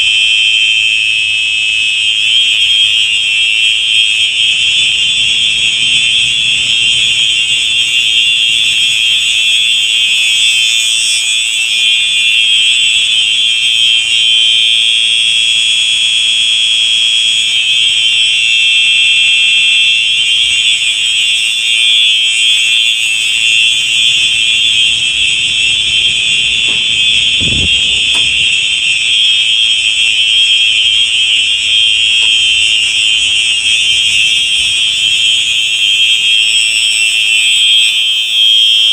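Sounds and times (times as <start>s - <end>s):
fire alarm horns: 0.0s - 38.9s
low thump: 25.7s - 28.5s.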